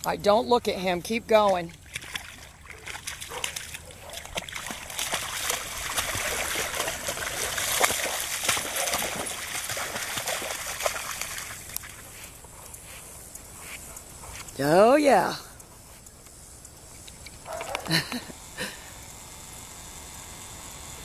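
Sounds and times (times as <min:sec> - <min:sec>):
dog splashing through water: 0:01.4 - 0:12.2.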